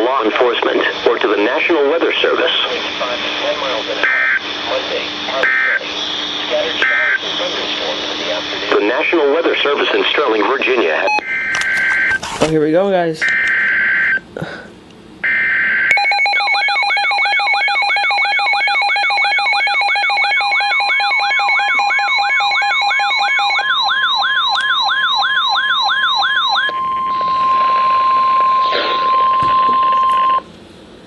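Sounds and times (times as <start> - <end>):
steady warning alarm tone: 3.6 - 4.5, 5.2 - 5.8, 6.5 - 8.1, 11.0 - 12.3, 13.2 - 14.2, 15.2 - 30.5
on-off beeps: 11.0 - 12.2, 13.2 - 14.2, 15.2 - 30.5
warbling alarm siren: 11.2 - 12.2, 15.2 - 30.5.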